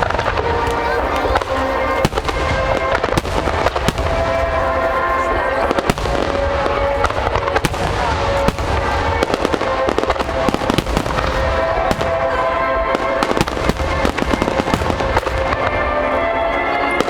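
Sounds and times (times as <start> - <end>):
fireworks bursting and crackling: 0.0 - 17.0
music of long held notes: 0.0 - 17.0.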